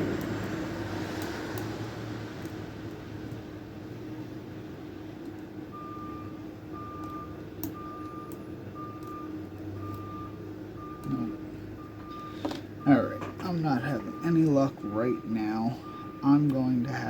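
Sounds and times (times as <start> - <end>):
electronic beeping: 5.7 - 17.0.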